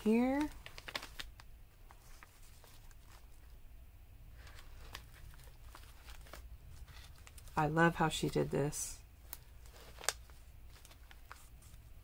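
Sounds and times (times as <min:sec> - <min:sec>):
paper pages ticking: 0:00.0 - 0:03.1.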